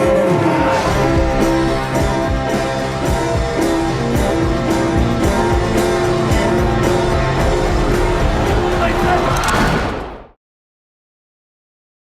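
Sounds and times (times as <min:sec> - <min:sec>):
rock music with guitar and drums: 0:00.0 - 0:09.3.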